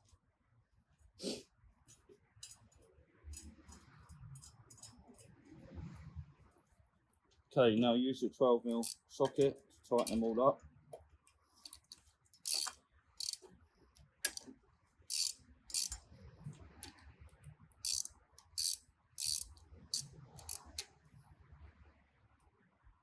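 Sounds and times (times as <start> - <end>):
socket ratchet clicking: 8.7 - 9.4, 11.6 - 14.5, 15.1 - 16.0, 17.8 - 20.9.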